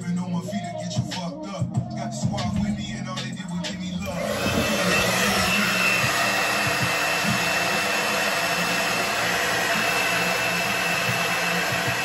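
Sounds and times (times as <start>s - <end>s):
hair dryer blowing: 4.0s - 12.0s.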